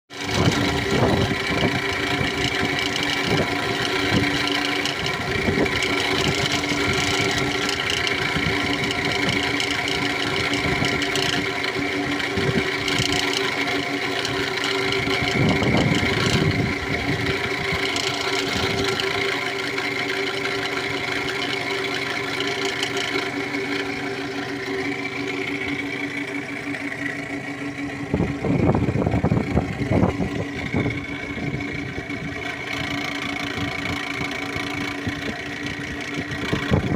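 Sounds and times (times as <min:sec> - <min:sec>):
alternator pulley whine: 0:00.1 - 0:36.9
car engine idling: 0:00.1 - 0:36.9.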